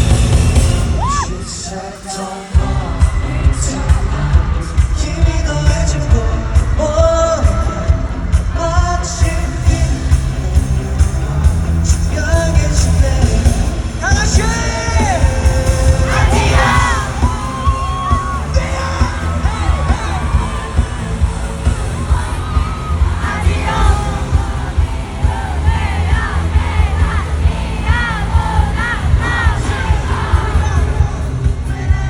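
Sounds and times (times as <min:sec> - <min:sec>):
backing track with heavy bass beat: 0:00.0 - 0:32.0
fans yelling and cheering: 0:00.0 - 0:32.0
male voices singing: 0:01.1 - 0:32.0.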